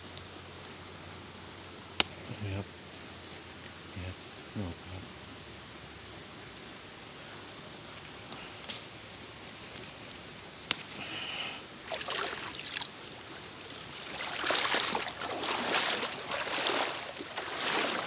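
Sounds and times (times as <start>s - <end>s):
water sloshing and splashing: 11.8s - 18.0s.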